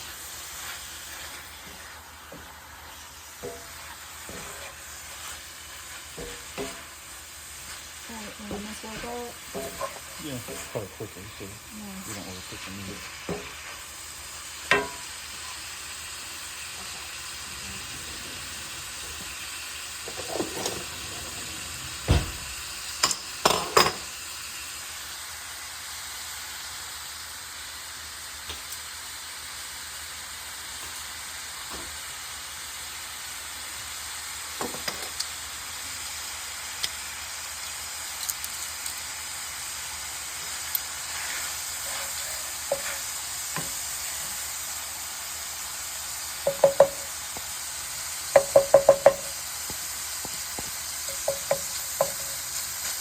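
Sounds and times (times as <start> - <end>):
meat sizzling in a frying pan: 0.0 - 53.0
utensil knocking and scraping: 41.8 - 43.7, 46.5 - 47.1, 48.4 - 49.3, 50.2 - 52.3.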